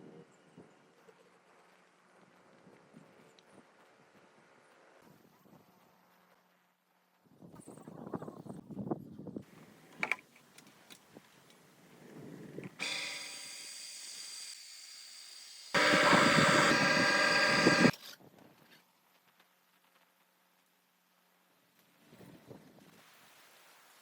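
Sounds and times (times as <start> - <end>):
motor-driven machine hissing: 12.8 - 17.9.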